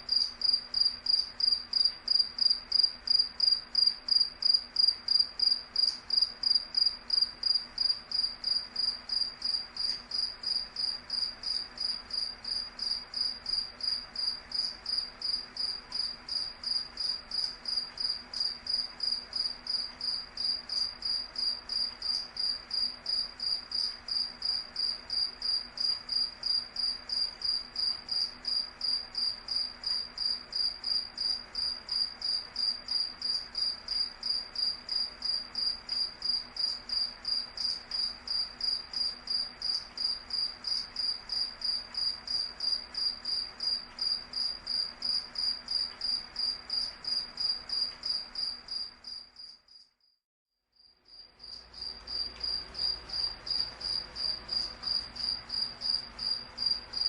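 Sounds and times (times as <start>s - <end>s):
cricket chirping: 0.0s - 50.2s, 50.8s - 57.0s.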